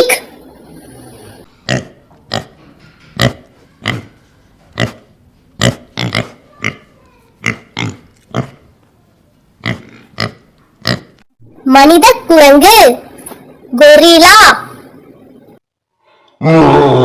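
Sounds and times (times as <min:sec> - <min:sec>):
pig grunting: 0:00.5 - 0:02.6, 0:03.2 - 0:08.6, 0:09.6 - 0:11.2.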